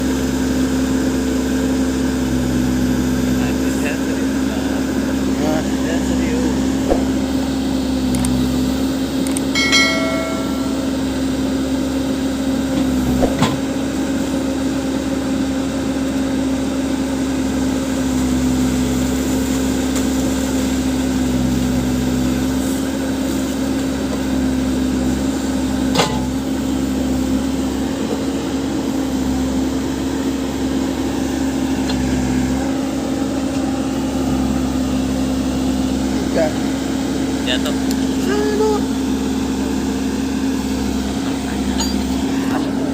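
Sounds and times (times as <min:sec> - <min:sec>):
diesel engine humming: 0:00.0 - 0:42.9
sharp knock: 0:06.8 - 0:07.3.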